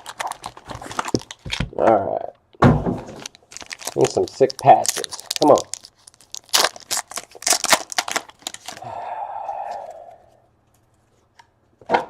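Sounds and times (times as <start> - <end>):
packaging crinkling and tearing: 0.0 - 1.7, 3.1 - 8.8.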